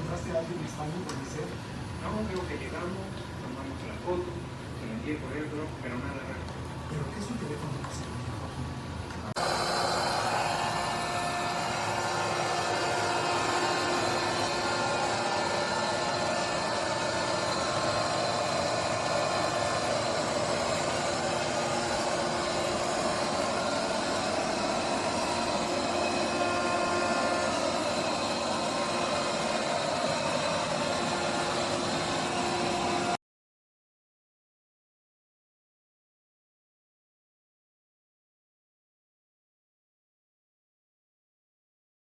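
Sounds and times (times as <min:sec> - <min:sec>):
robot vacuum whirring: 0:09.4 - 0:33.2.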